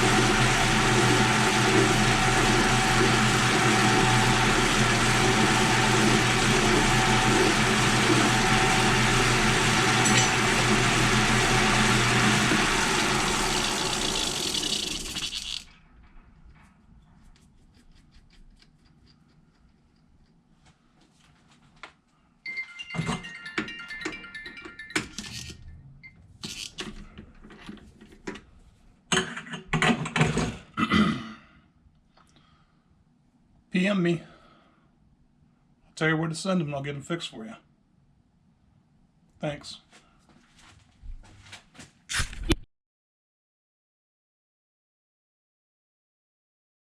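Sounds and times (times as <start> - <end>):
power tool running and spinning down: 0.0 - 15.7.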